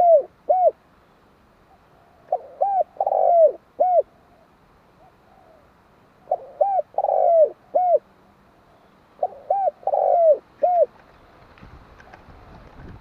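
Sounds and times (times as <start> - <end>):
dove cooing: 0.0 - 0.8, 1.7 - 8.1, 9.2 - 11.0.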